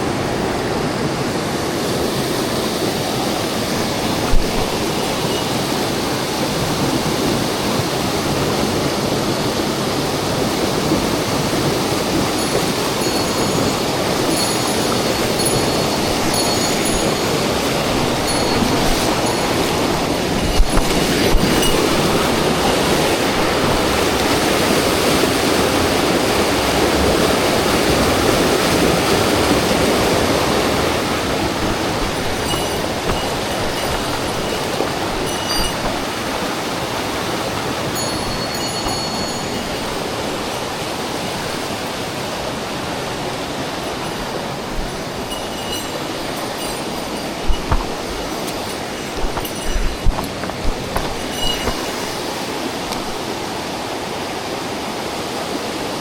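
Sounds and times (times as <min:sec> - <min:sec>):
stream rushing over rocks: 0:00.0 - 0:56.0.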